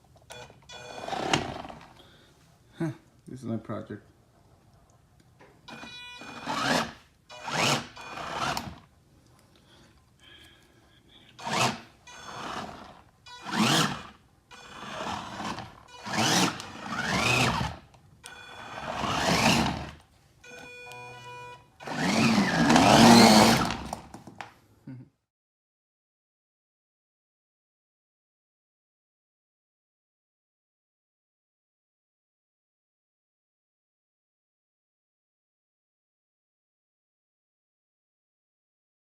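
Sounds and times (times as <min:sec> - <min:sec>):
small electric motors whining: 0:05.7 - 0:08.8, 0:11.4 - 0:20.0, 0:20.6 - 0:24.0.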